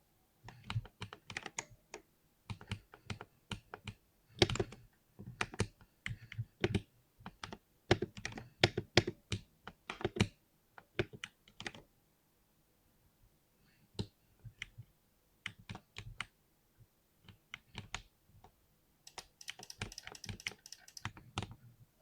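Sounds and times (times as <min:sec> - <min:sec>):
mechanical keyboard typing: 0:19.1 - 0:21.5.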